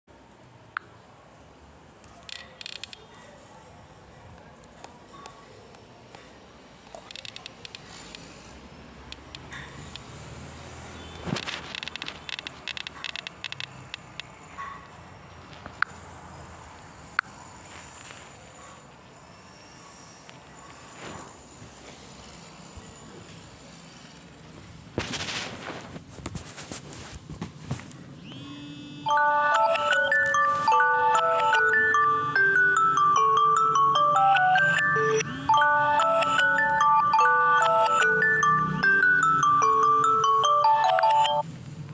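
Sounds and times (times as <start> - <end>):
clicks and rustling: 11.2 - 14.1
jingling alarm tone clicks: 29.1 - 41.4.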